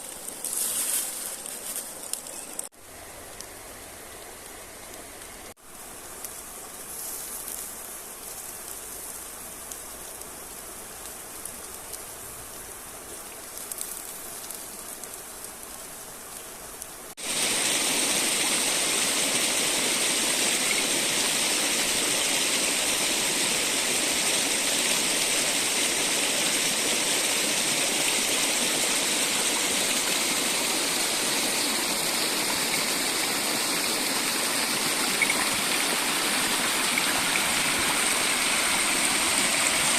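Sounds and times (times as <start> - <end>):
river water rushing: 17.2 - 39.9.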